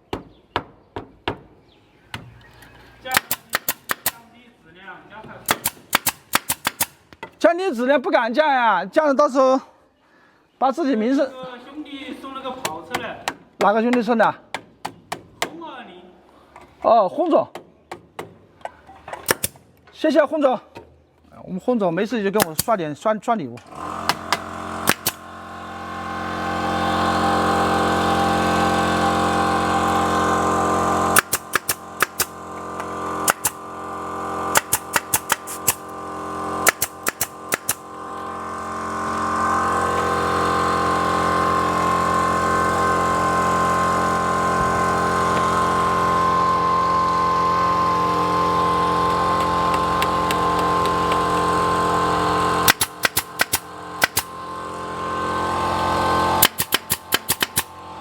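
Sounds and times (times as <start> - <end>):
sharp knocks and clicks: 3.1 - 4.2, 36.7 - 37.8, 52.7 - 54.3, 56.4 - 57.7
woodworking machine motor whine: 23.7 - 58.0.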